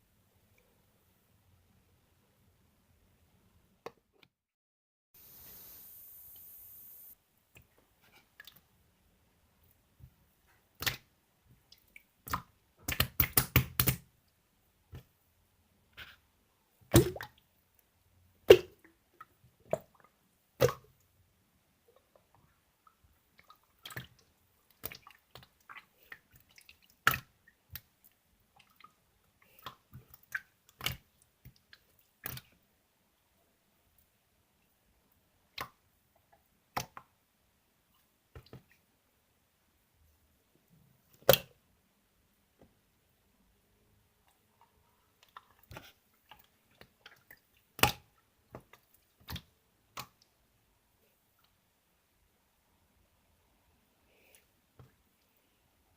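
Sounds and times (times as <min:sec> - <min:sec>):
slime squeezed with wet pops: 0:12.3 - 0:14.0, 0:16.9 - 0:17.4.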